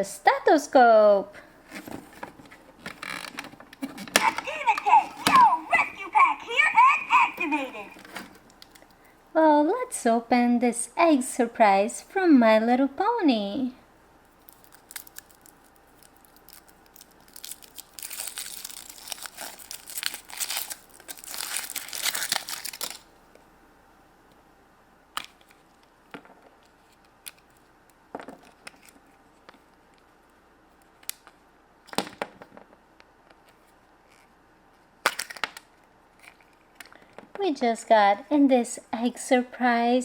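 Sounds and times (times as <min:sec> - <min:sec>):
foil wrapper crinkling: 0:14.4 - 0:23.1.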